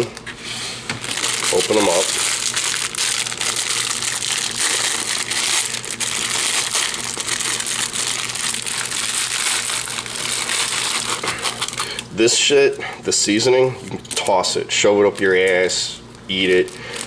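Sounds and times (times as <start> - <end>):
plastic wrappers crinkling: 0.9 - 12.1, 16.4 - 17.0.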